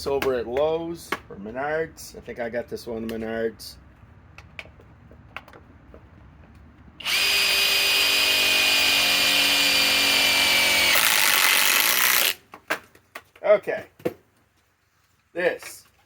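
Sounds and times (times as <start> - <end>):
impact driver whine: 7.0 - 12.4.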